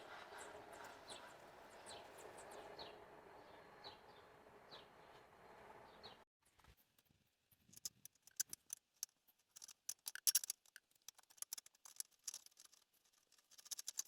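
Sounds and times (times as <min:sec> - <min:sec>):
light clicks and clinks of metal parts: 0:07.6 - 0:14.0.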